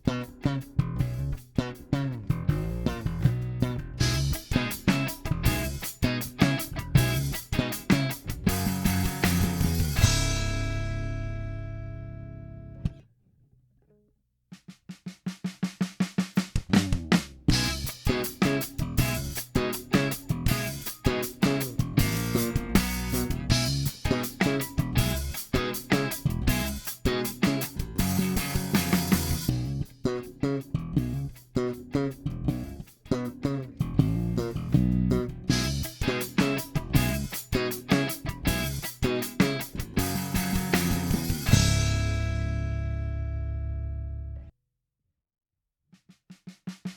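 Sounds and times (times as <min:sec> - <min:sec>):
fast percussive bass notes: 0:00.0 - 0:13.0, 0:15.5 - 0:44.5
electric bass note: 0:02.1 - 0:05.8, 0:08.3 - 0:13.0, 0:21.7 - 0:24.2, 0:27.8 - 0:29.9, 0:33.8 - 0:36.0, 0:39.8 - 0:44.5.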